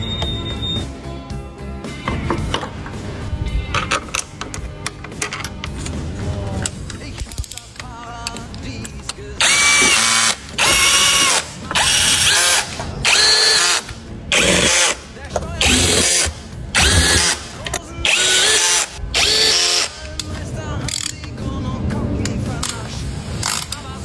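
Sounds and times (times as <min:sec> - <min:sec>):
power drill short bursts: 0:09.4 - 0:15.0, 0:15.6 - 0:20.1.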